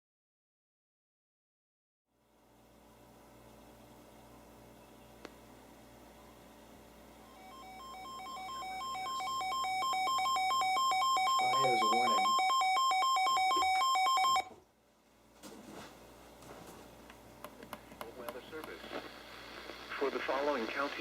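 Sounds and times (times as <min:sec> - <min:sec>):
weather radio alarm beeping: 0:07.2 - 0:14.6.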